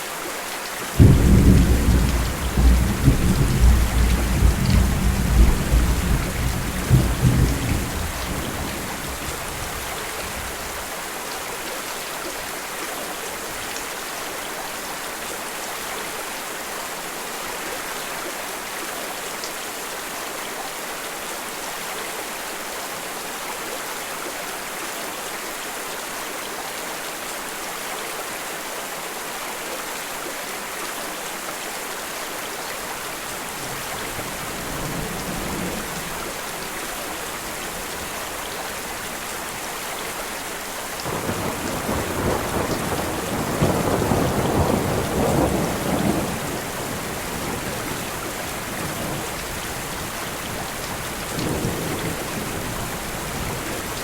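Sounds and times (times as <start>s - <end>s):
steady rain: 0.0s - 54.0s
low thunder rumble: 1.0s - 10.8s, 41.0s - 54.0s.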